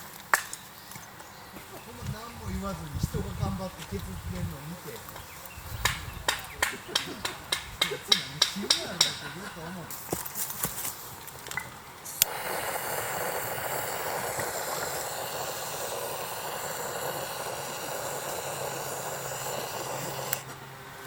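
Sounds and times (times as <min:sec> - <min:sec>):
gas torch hissing: 0:12.0 - 0:20.6
gas torch ignition click: 0:12.1 - 0:20.6.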